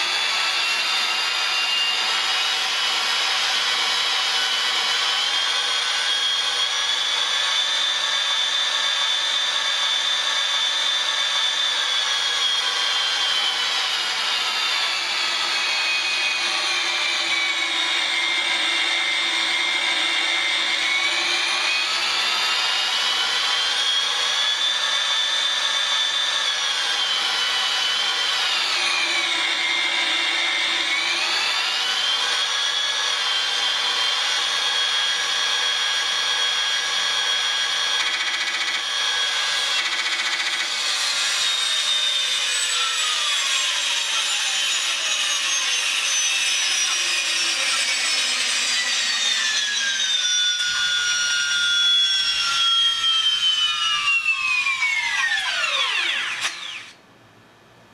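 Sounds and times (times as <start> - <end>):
helicopter turbine whine from speaker: 43.4 - 56.1.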